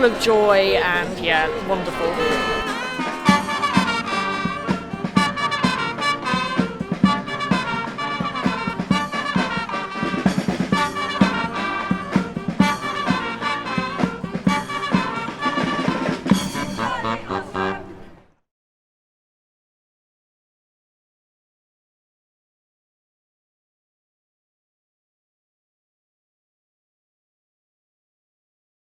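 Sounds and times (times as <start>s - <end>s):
brass band playing: 0.0s - 18.2s.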